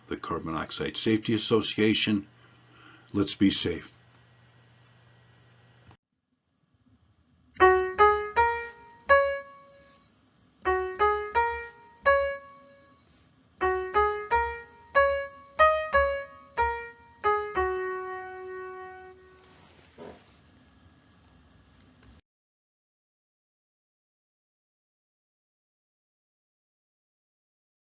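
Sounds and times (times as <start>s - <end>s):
solo piano melody: 7.6s - 19.9s.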